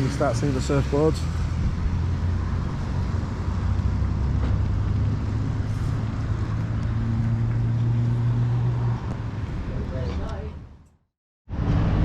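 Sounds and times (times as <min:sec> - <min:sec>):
wind noise: 0:01.4 - 0:10.6.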